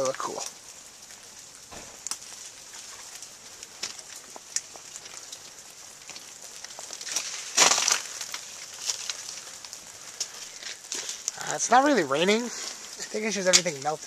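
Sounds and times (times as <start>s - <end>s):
meltwater dripping: 0.0s - 14.0s.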